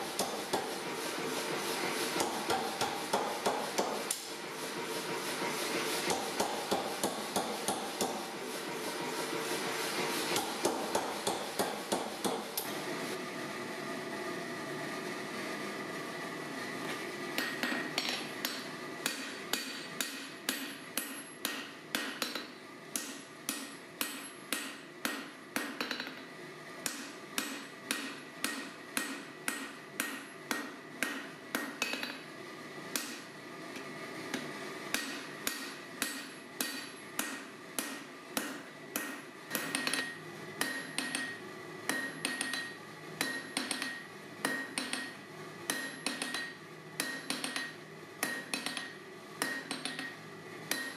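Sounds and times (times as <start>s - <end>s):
hammer striking anvil: 6.1s - 8.2s, 10.4s - 12.4s, 17.4s - 26.2s, 26.8s - 32.2s, 34.9s - 50.9s.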